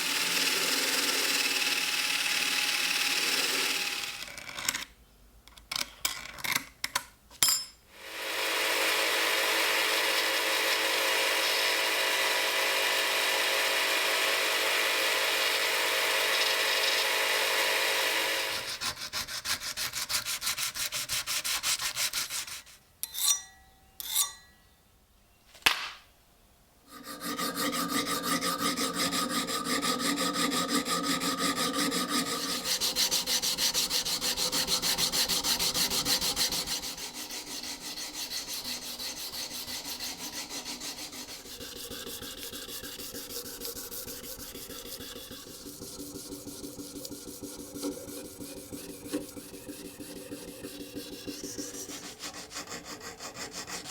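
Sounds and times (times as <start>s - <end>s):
abrasive sanding scratching: 18.6s - 23.4s, 26.9s - 53.9s.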